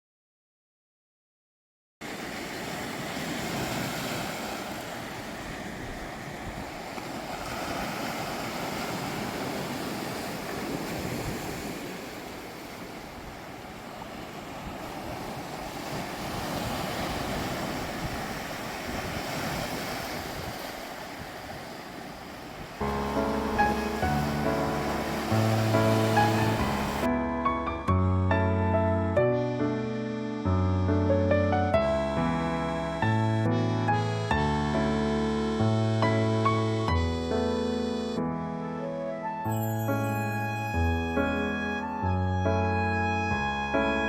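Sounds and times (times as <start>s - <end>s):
sea surf breaking on shore: 2.0s - 27.1s
background music: 22.8s - 44.0s.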